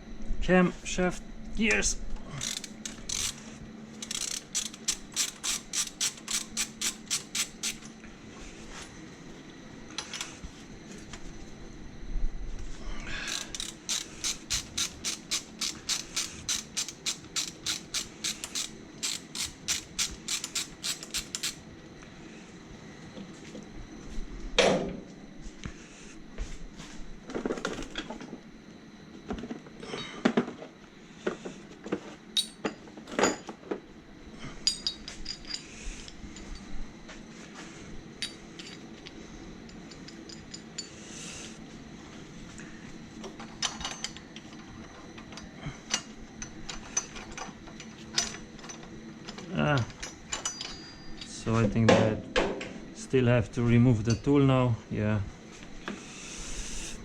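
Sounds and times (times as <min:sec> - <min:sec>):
ratchet wrench clicking: 0:02.4 - 0:03.4, 0:04.0 - 0:07.9, 0:13.3 - 0:21.6
light metallic clinks: 0:49.8 - 0:51.6.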